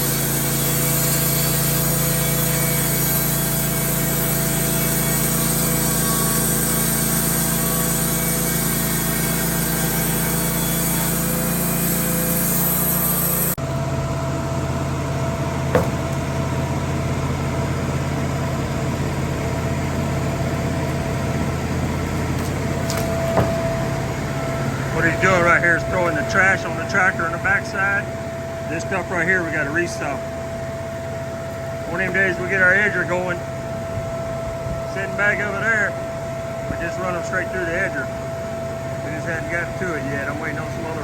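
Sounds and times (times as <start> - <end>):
saw blade cutting log: 0.0 - 13.6, 15.7 - 16.4, 22.1 - 24.0
sawmill engine running: 0.0 - 41.0
knock: 15.8 - 16.2, 23.4 - 23.6.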